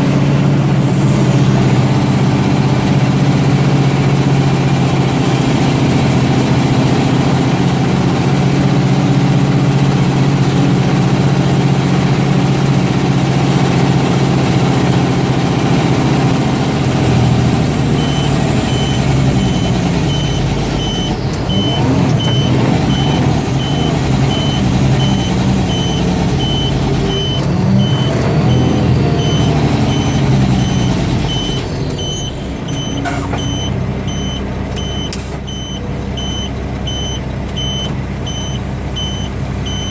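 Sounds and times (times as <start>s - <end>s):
diesel truck engine running: 0.0s - 39.9s
back-up alarm beeping: 17.0s - 39.9s.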